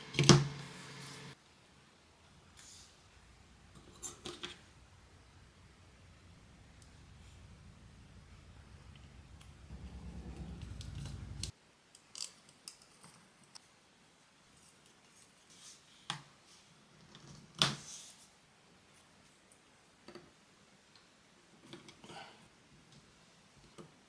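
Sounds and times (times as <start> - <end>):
low hum: 0.0 - 1.4, 2.0 - 11.5.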